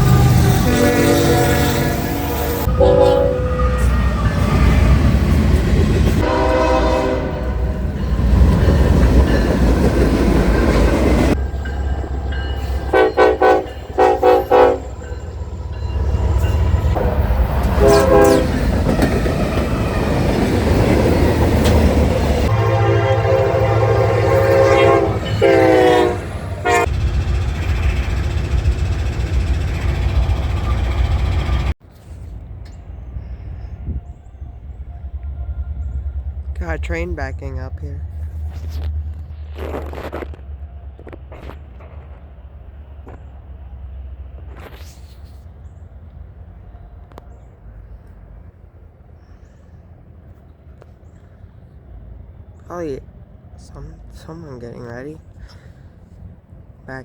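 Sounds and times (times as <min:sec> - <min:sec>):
locomotive air horn blasts: 0:00.0 - 0:05.0, 0:06.2 - 0:07.8, 0:12.8 - 0:15.1, 0:17.0 - 0:18.8, 0:22.4 - 0:26.9
moving train rumble: 0:00.0 - 0:57.0.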